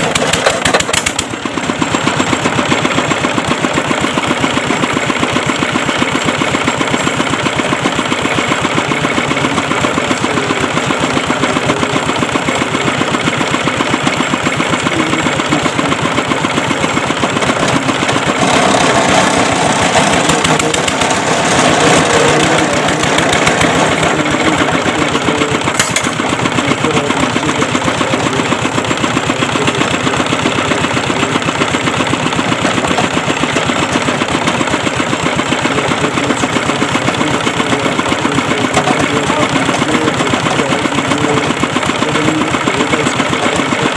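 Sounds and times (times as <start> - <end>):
boring machine engine running: 0.0 - 43.9
loud rough noise: 0.0 - 43.9
sharp click: 25.7 - 26.2.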